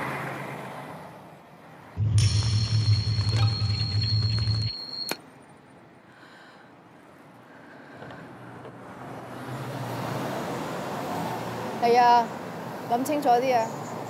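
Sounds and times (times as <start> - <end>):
loud low hum with high tone: 2.0 - 5.2.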